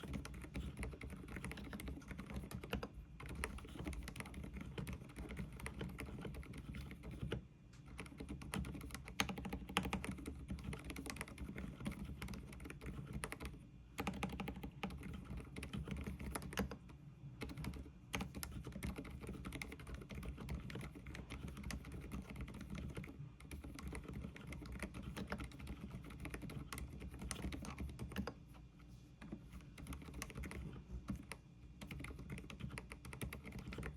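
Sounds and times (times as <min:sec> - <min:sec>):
soft keyboard typing: 0:00.0 - 0:33.9.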